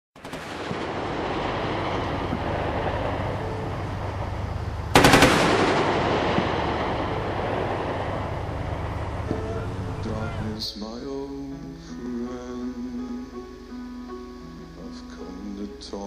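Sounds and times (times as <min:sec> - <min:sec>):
automatic gunfire burst: 0:00.2 - 0:01.0, 0:05.0 - 0:06.6
low background noise: 0:00.2 - 0:16.0.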